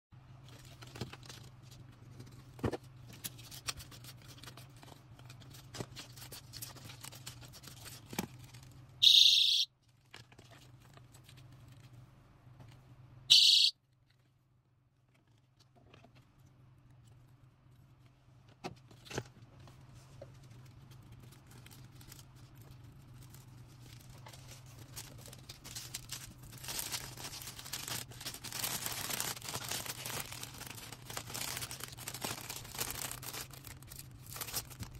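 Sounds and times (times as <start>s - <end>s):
plastic crinkling: 0.4s - 8.9s, 19.1s - 34.9s
high-pitched safety alarm blasts: 9.0s - 9.7s, 13.3s - 13.7s
handling packing materials: 17.8s - 34.9s.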